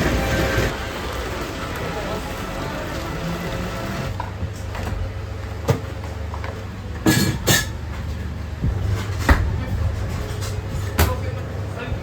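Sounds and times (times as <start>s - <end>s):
steady low rumble: 8.1s - 12.0s.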